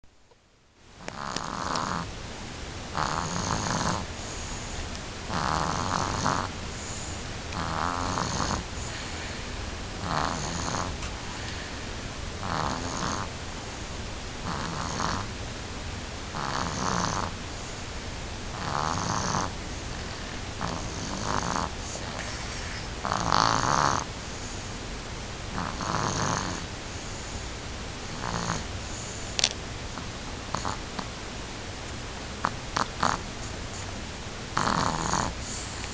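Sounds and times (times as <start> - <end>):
person snoring: 1.0 - 2.1, 3.0 - 11.8, 12.4 - 13.3, 14.4 - 15.3, 16.4 - 17.3, 18.5 - 24.5, 25.5 - 26.7, 28.1 - 29.2, 34.6 - 35.9.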